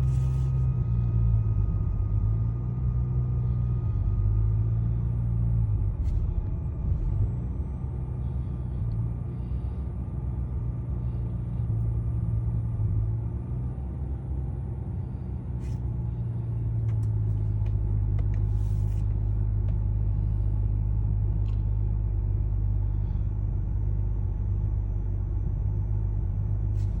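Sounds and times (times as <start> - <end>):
car engine idling roughly: 14.9 - 25.0.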